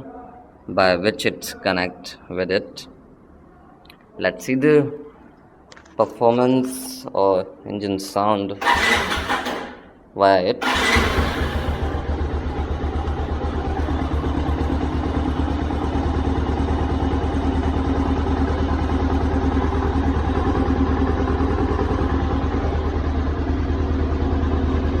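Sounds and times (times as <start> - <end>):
motorcycle engine idling: 8.6 - 9.9, 10.6 - 25.0.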